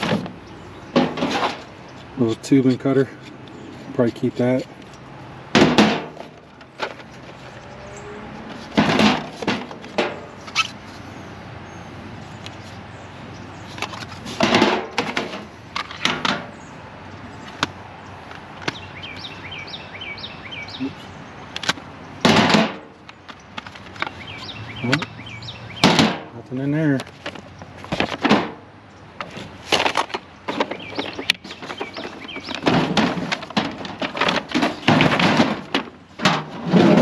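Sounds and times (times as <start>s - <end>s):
objects clattering and knocking: 0.0s - 1.7s, 5.5s - 10.7s, 13.7s - 16.5s, 21.6s - 22.9s, 27.0s - 28.6s, 29.2s - 37.0s.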